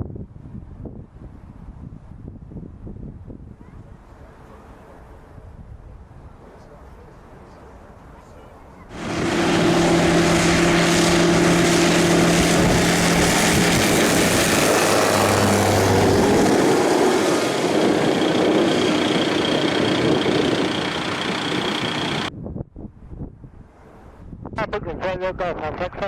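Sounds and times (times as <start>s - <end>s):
propeller aircraft engine drone: 8.9s - 22.3s.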